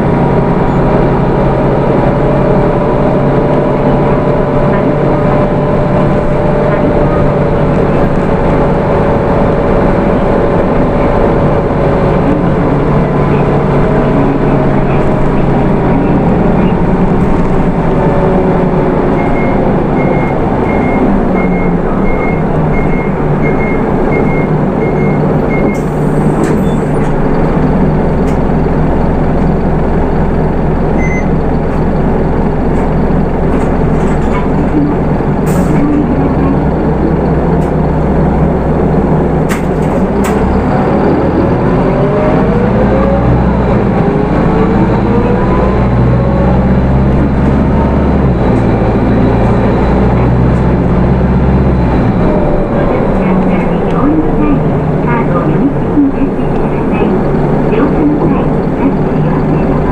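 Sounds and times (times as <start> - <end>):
diesel engine drone: 0.0 - 59.9
transmission whine: 0.0 - 59.9
short high beeps: 31.0 - 31.3.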